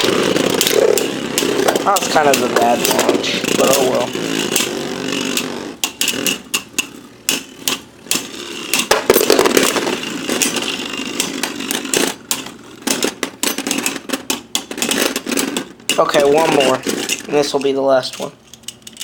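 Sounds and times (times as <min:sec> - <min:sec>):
spinning tops whirring: 0:00.0 - 0:19.0
tops clacking together: 0:00.0 - 0:19.0.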